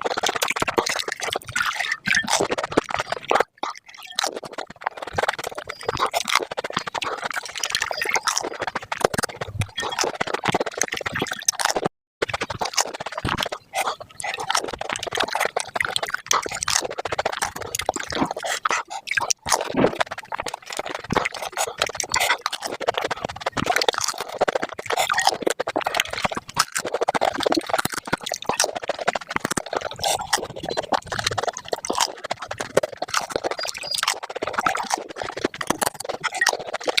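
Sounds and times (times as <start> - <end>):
wet slurpy smacks: 0.0 - 37.0.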